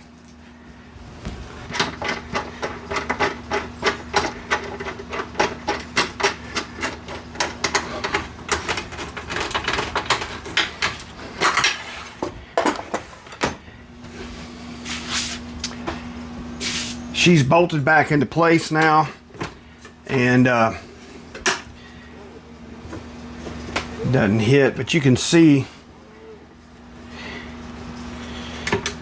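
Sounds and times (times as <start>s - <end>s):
bolts clicking and clinking: 1.7s - 11.8s.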